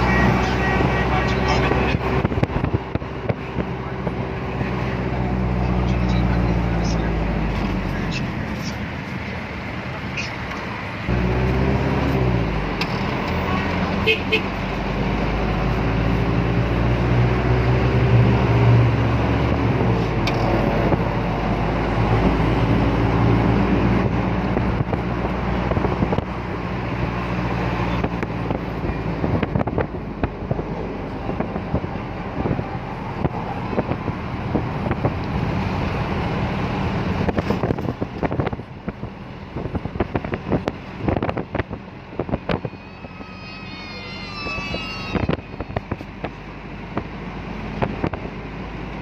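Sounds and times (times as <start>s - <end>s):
road noise: 0.0s - 49.0s
vehicle engine running: 0.0s - 49.0s
wind buffeting microphone: 0.2s - 4.7s, 19.4s - 27.2s, 27.9s - 35.8s, 36.9s - 43.2s, 44.5s - 48.7s.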